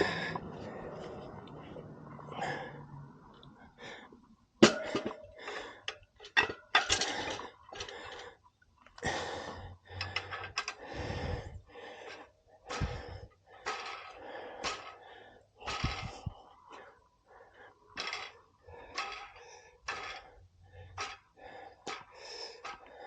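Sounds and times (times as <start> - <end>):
motorcycle wheel knocks and clanks: 4.6 - 7.3.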